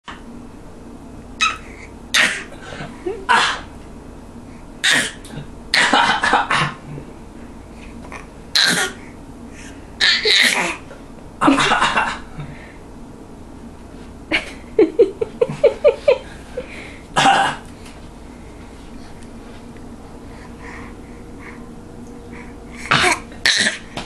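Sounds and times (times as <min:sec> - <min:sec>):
child coughing: 0:01.5 - 0:02.5, 0:03.3 - 0:03.7, 0:04.8 - 0:05.2, 0:05.8 - 0:06.8, 0:08.6 - 0:09.0, 0:10.0 - 0:10.8, 0:17.2 - 0:17.6, 0:22.9 - 0:23.8.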